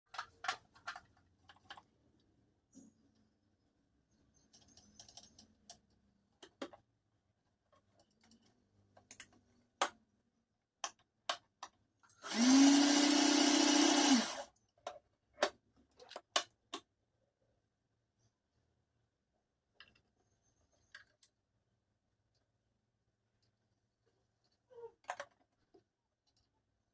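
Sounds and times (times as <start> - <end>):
electric sewing machine running: 12.2 - 14.5.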